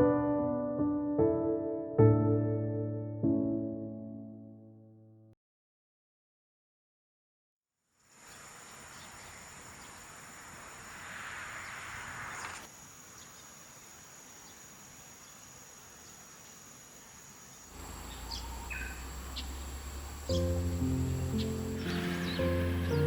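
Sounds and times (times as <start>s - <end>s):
steady outdoor hiss: 7.9s - 23.0s
short bird chirps: 17.8s - 20.6s.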